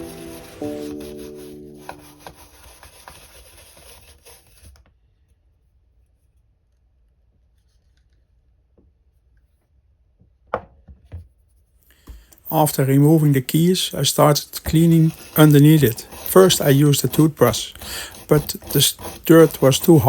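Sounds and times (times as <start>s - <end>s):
background music held chord: 0.0s - 2.7s
faint small clicks and scrapes: 6.2s - 8.5s.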